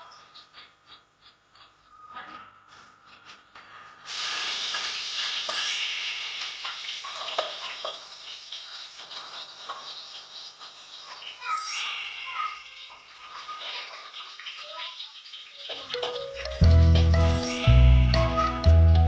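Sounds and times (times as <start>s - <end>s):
food sizzling in hot oil: 4.0s - 18.9s.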